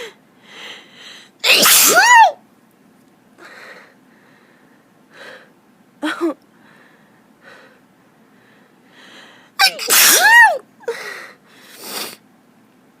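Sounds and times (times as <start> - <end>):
woman sneezing: 1.4 - 2.4, 9.6 - 10.6.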